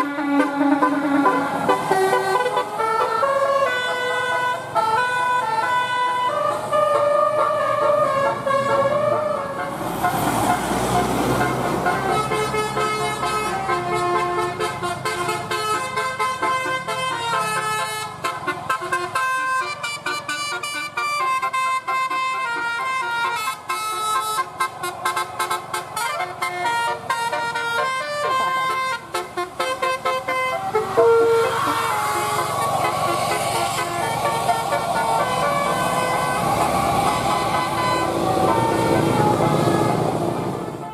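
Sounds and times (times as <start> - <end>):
bus air horns playing a melody: 0.0 - 40.9
rush of noise: 31.2 - 40.8.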